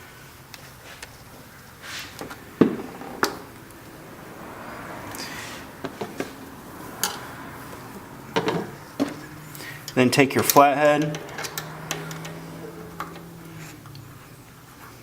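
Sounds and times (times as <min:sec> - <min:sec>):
clicks and knocks of hose clamp: 0:09.8 - 0:12.4.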